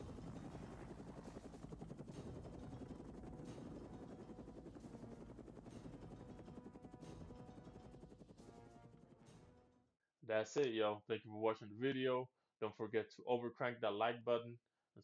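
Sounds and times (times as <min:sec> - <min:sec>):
helicopter rotor chopping: 0:00.0 - 0:09.5.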